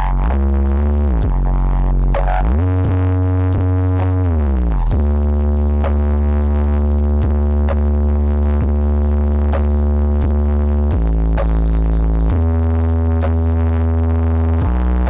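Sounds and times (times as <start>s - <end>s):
electronic dance music: 0.0s - 15.0s
heavy bass: 0.0s - 15.0s.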